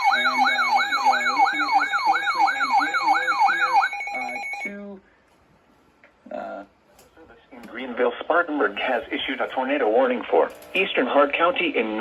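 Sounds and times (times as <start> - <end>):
electronic yelping siren: 0.0 - 4.8.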